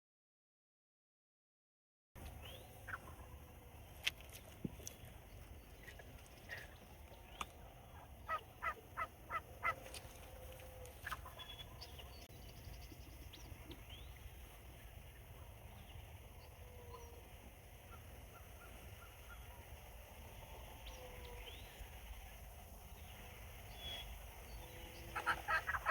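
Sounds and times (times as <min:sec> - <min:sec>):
turkey yelps: 0:08.0 - 0:09.8, 0:25.1 - 0:25.9.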